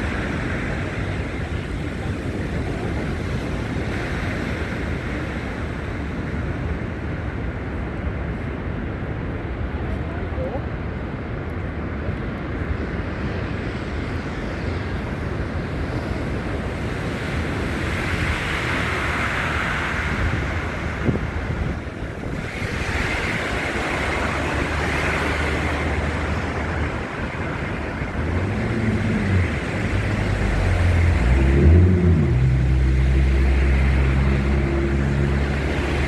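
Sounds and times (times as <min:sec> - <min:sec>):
city traffic: 0:00.0 - 0:36.0
vehicles passing: 0:00.0 - 0:36.0
wind buffeting microphone: 0:00.0 - 0:36.0.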